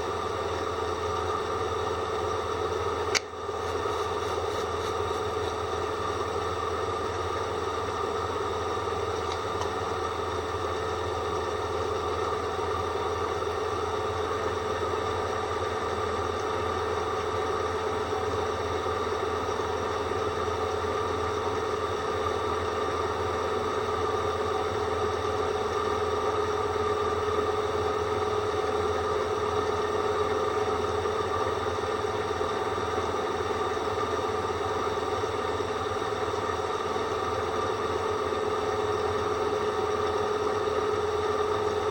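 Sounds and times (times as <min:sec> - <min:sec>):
drill whistling over motor hum: 0:09.8 - 0:41.9.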